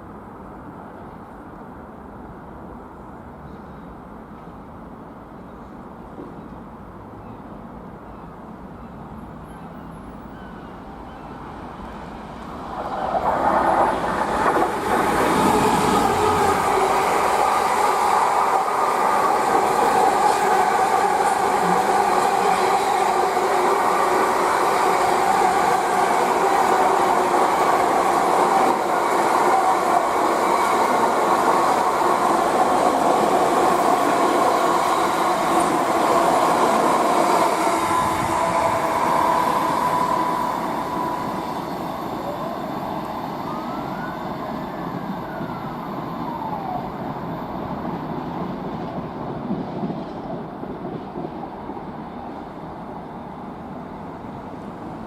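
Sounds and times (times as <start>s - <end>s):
freight train passing: 0.0s - 55.0s.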